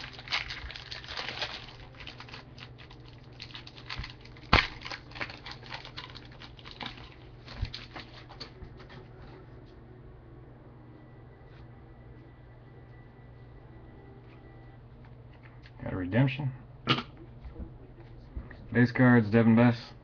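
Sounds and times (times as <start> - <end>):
cards and packaging rustling: 0.0 - 8.5.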